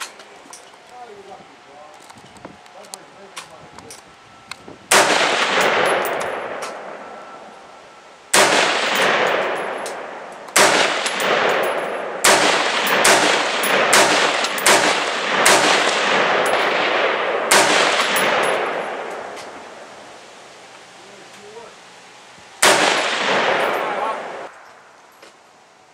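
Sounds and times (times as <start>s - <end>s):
rifle shots with echo: 4.9s - 7.5s, 8.3s - 20.0s, 22.6s - 24.6s.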